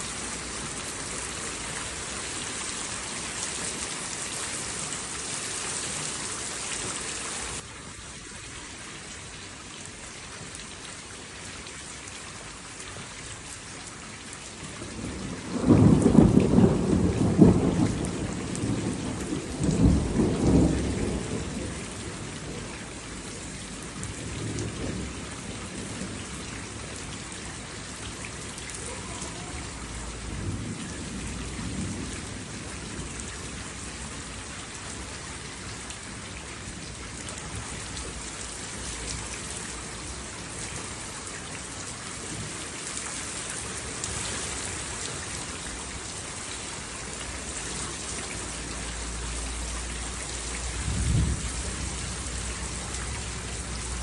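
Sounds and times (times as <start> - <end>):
steady rain: 0.0 - 54.0
thunder rolling: 15.0 - 22.7, 50.8 - 52.2.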